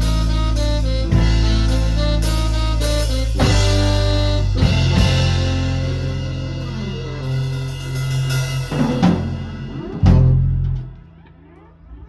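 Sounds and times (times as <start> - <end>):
drum and cymbal hits: 0.0 - 10.9
ska band playing: 0.0 - 11.2.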